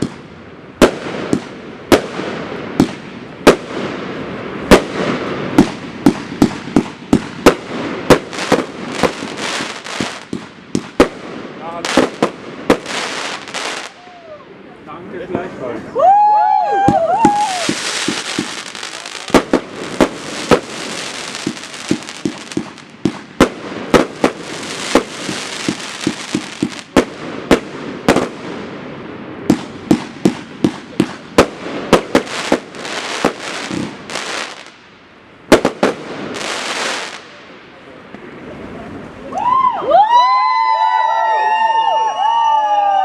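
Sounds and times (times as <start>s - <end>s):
firework bangs: 0.0s - 14.2s, 16.2s - 38.5s
firework crackling hiss: 0.0s - 14.4s, 16.9s - 37.6s.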